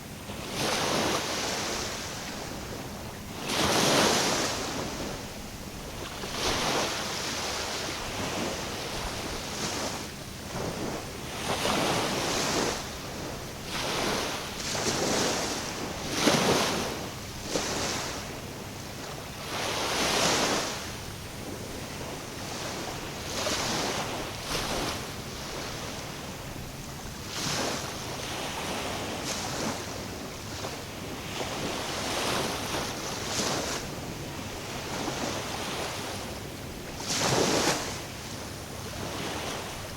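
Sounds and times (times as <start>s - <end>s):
waves breaking on shore: 0.0s - 39.9s.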